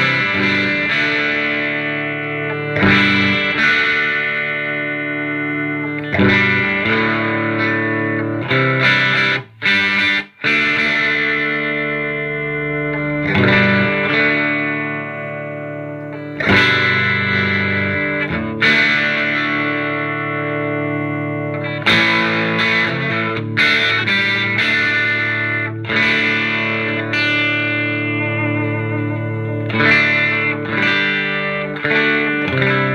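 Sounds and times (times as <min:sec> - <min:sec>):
electric guitar chords ringing: 0:00.0 - 0:32.9.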